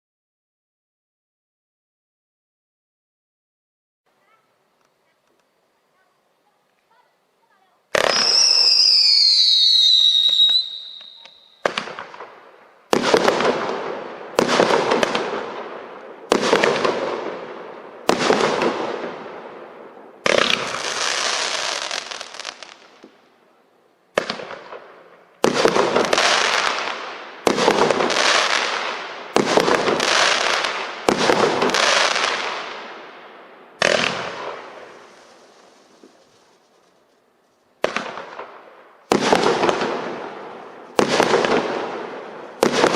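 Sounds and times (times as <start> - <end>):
fireworks reports: 4.2 - 8.9, 9.6 - 12.3, 33.8 - 37.1
fireworks crackle and hiss: 4.2 - 42.9
falling high whistle: 8.1 - 11.6.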